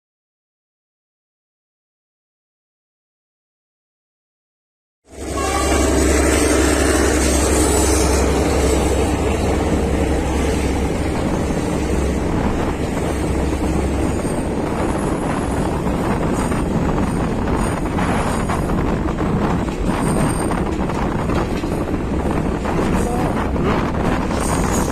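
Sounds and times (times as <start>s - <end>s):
diesel train engine rumbling: 5.1s - 24.9s.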